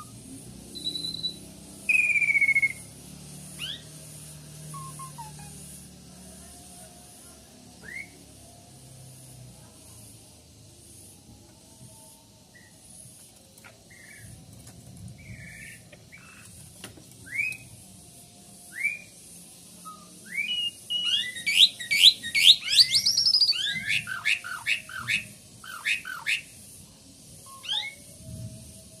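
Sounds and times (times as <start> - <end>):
starling whistling song: 0.0 - 5.7, 7.8 - 8.4, 13.9 - 14.4, 15.2 - 16.5, 17.2 - 17.9, 18.7 - 26.6, 27.4 - 28.9.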